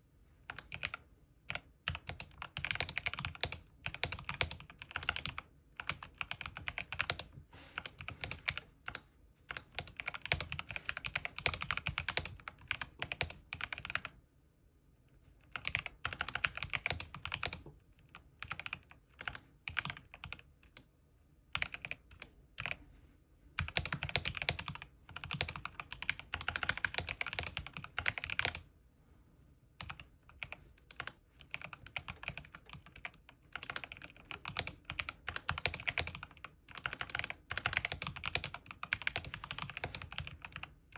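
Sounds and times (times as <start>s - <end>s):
mechanical keyboard clicks: 0.5s - 7.3s, 15.6s - 17.6s, 23.6s - 28.6s, 29.8s - 40.7s.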